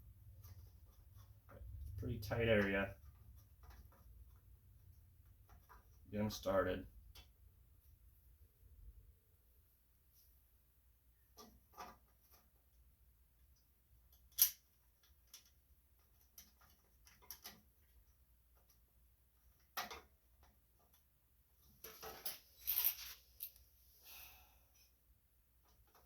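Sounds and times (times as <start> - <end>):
small metal clicks and taps: 14.1 - 17.7, 19.5 - 21.1.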